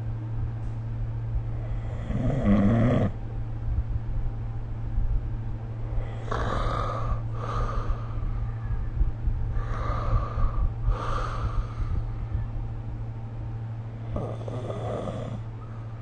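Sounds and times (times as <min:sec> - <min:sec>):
steady low hum: 0:00.0 - 0:16.0
person snoring: 0:01.6 - 0:03.2, 0:06.0 - 0:08.2, 0:09.6 - 0:12.0, 0:14.1 - 0:15.4.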